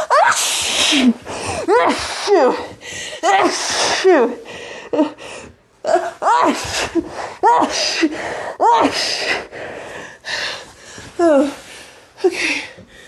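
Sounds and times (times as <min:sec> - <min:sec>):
person breathing: 0:08.0 - 0:13.0.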